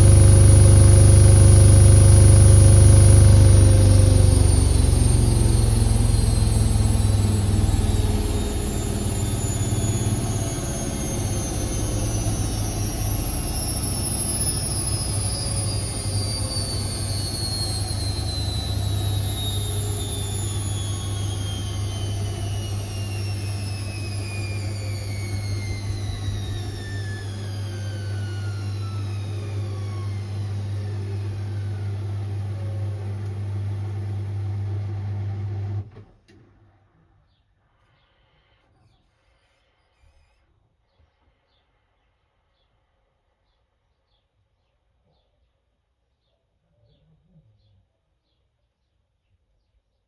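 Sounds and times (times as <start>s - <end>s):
steady low hum: 0.0s - 34.0s
washing machine motor whine: 0.0s - 36.4s.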